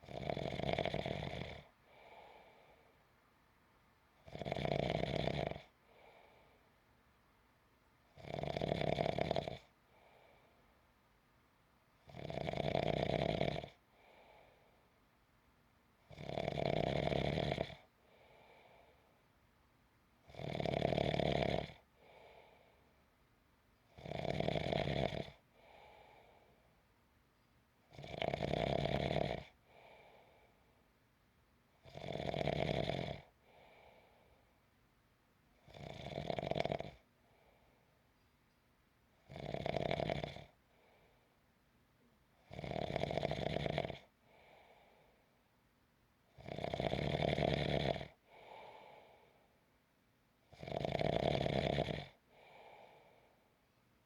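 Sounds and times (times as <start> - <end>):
person snoring: 0.0 - 1.7, 12.1 - 13.8, 20.3 - 22.2, 24.0 - 25.4, 31.9 - 33.3, 46.4 - 49.0, 50.6 - 53.0
faint breath: 1.6 - 3.3, 5.7 - 7.0, 9.7 - 11.0, 13.8 - 15.1, 17.9 - 19.4, 21.9 - 23.1, 25.4 - 27.6, 29.5 - 31.0, 33.3 - 34.7, 37.1 - 38.6, 40.5 - 41.5, 44.2 - 45.5, 48.2 - 49.7, 52.2 - 54.0.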